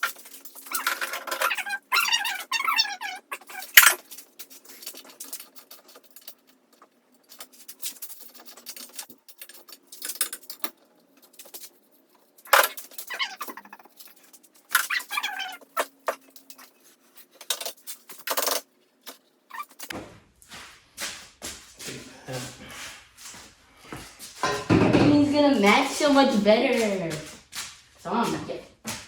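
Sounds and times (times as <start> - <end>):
bicycle parts and tools rattling: 0.0 - 19.9
short squeaks: 0.6 - 4.1, 12.5 - 16.2, 19.5 - 19.9.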